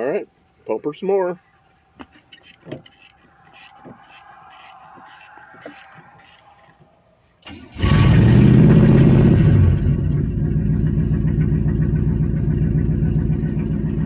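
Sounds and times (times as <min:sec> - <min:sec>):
car engine starting and revving: 0:07.4 - 0:14.0.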